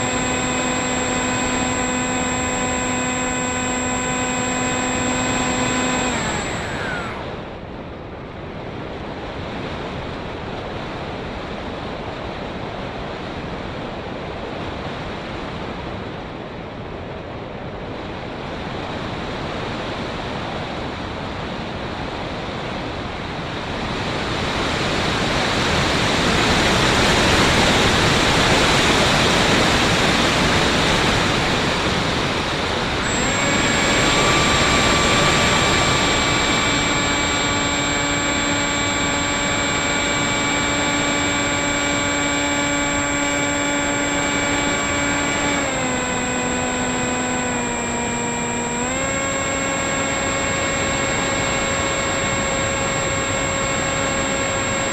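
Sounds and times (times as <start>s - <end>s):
electric motor whine: 0.0s - 7.6s, 24.1s - 54.9s.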